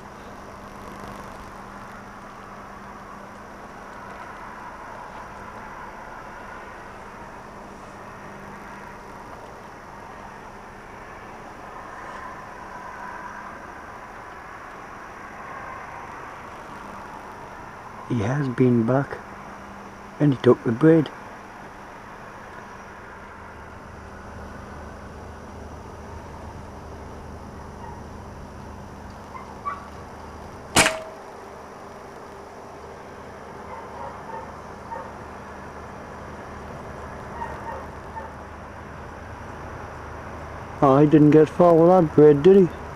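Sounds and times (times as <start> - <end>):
air rifle shot: 30.8 - 31.2.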